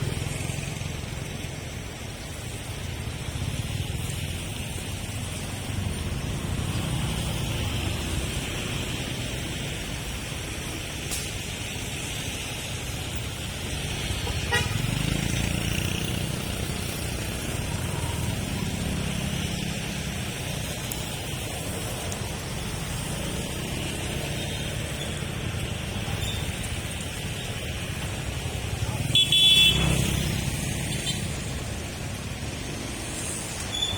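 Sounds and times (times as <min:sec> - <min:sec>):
traffic rumble: 0:00.0 - 0:33.9
vehicle horn tooting: 0:14.3 - 0:15.0, 0:29.0 - 0:30.2.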